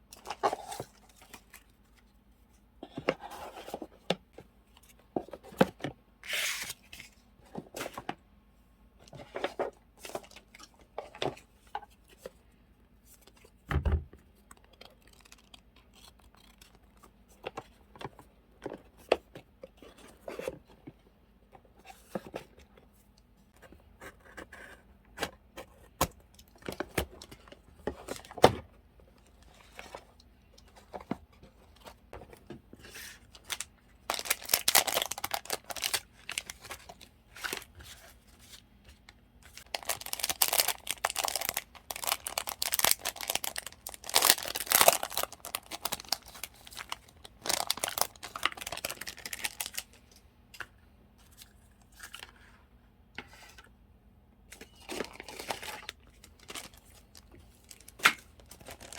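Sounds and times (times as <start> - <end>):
packaging crinkling and rustling: 14.4 - 18.3, 29.2 - 50.2, 54.5 - 58.9.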